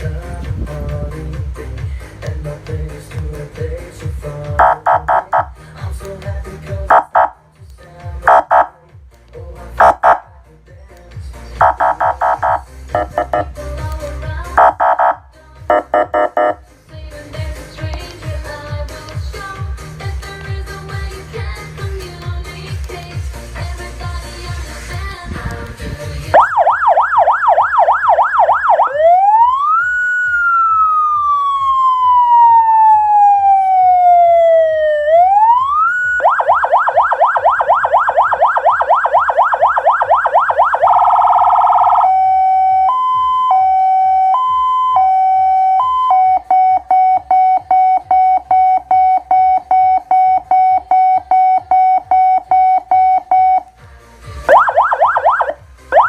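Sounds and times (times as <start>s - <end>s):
electronic siren cycling tones: 4.6s - 5.5s, 6.9s - 7.4s, 8.3s - 8.7s, 11.6s - 13.5s, 14.6s - 16.6s, 26.3s - 53.7s, 54.5s - 56.0s.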